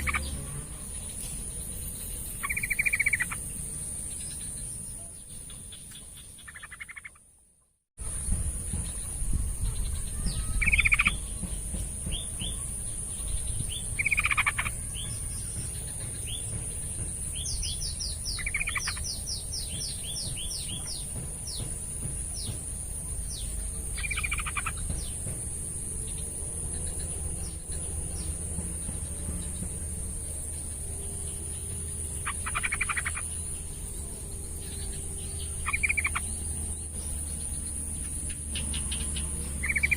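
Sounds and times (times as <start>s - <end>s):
bird singing: 0.0s - 7.4s, 8.0s - 39.9s.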